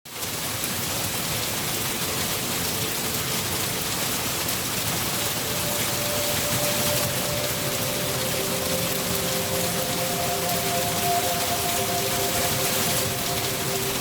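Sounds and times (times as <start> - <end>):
rain falling steadily: 0.1 - 14.0.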